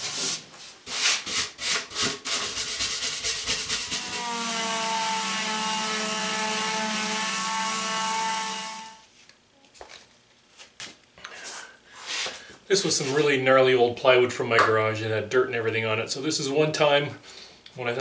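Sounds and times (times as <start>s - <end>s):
sandpaper scrubbing plywood: 0.0s - 9.0s
power tool motor running: 4.0s - 9.0s.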